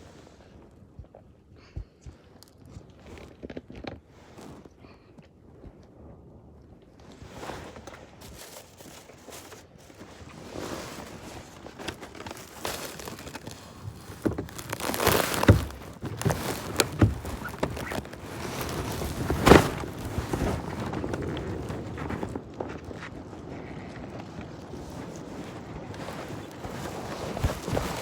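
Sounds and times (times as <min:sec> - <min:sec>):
muffled rustling: 0:07.4 - 0:28.0
loud thuds: 0:12.3 - 0:21.0.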